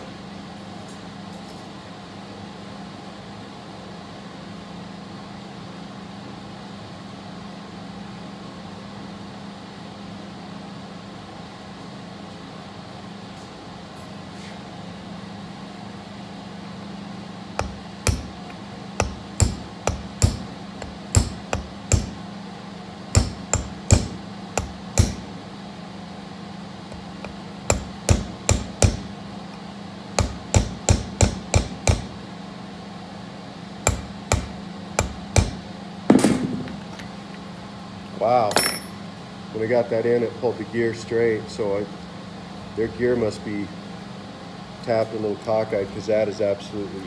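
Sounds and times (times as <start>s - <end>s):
steady low hum: 0.0s - 47.0s
hammer tapping metal punch: 17.6s - 22.2s, 23.1s - 25.3s, 26.9s - 29.1s, 30.2s - 32.2s, 33.9s - 36.8s, 38.5s - 39.0s.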